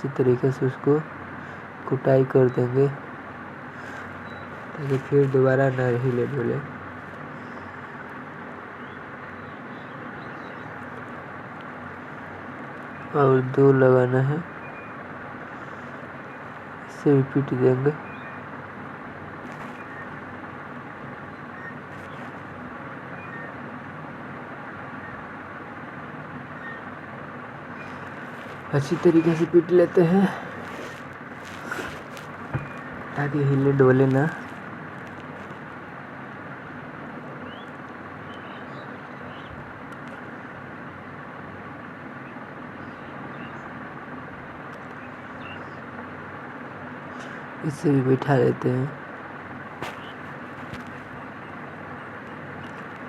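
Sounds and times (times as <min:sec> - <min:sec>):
background rumble and hiss: 0:00.0 - 0:53.0
steady background noise: 0:00.0 - 0:53.0.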